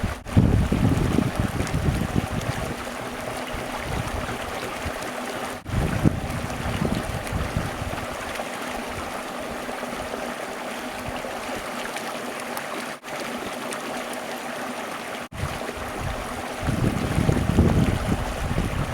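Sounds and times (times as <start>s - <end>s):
wind rumble on microphone: 0.0s - 9.2s, 15.3s - 18.9s
stream of water running: 0.0s - 18.9s.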